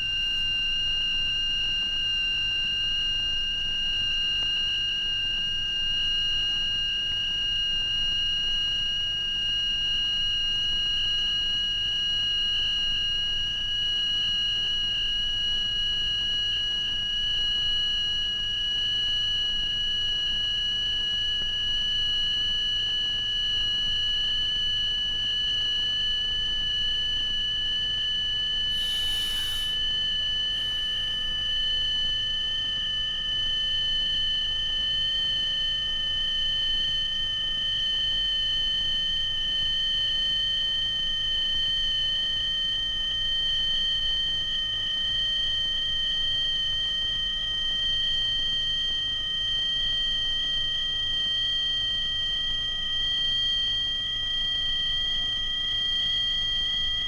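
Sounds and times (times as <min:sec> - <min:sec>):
high electronic sine whistle: 0:00.0 - 0:57.0
brief hiss: 0:28.7 - 0:31.4.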